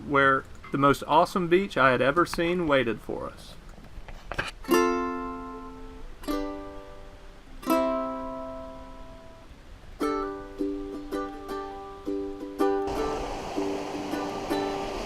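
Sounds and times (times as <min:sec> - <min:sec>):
strummed string instrument: 0:04.4 - 0:15.0.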